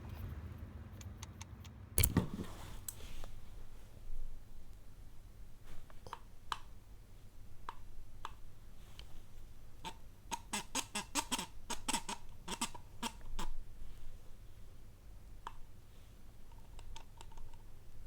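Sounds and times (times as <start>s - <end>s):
metallic clicks of hand tools: 1.0s - 3.0s.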